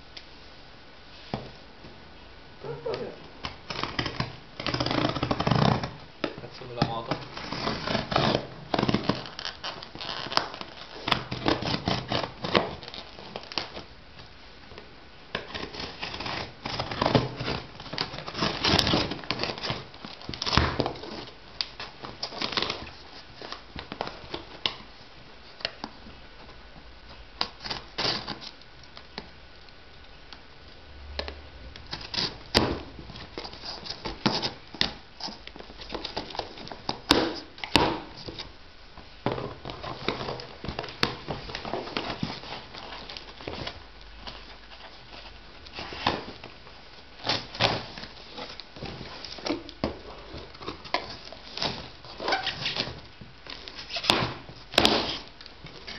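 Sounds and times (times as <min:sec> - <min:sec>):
packaging crinkling and tearing: 0:06.6 - 0:13.9, 0:15.4 - 0:24.8.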